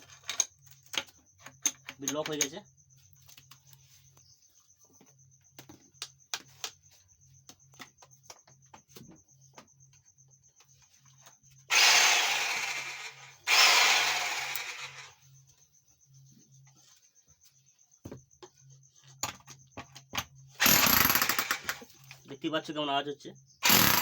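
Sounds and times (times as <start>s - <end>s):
electric demolition hammer running: 11.7s - 15.2s, 20.6s - 21.9s, 23.6s - 24.0s.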